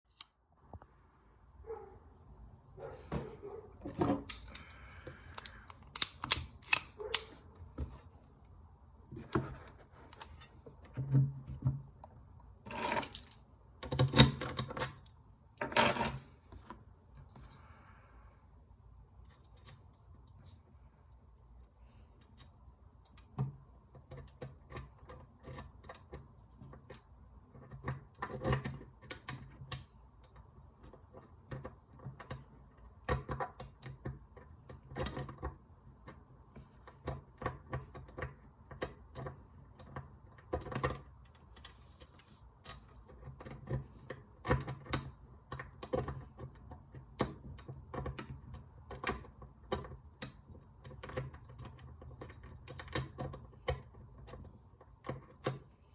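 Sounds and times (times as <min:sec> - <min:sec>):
lock picks clicking in a lock: 0:05.3 - 0:07.4, 0:12.8 - 0:16.2, 0:22.2 - 0:35.5, 0:42.6 - 0:55.6.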